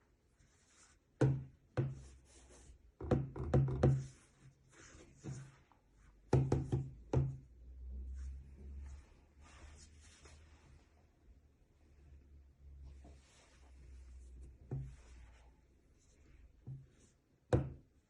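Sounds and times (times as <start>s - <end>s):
knocks and taps on hard surface: 3.0s - 4.1s, 6.3s - 7.4s.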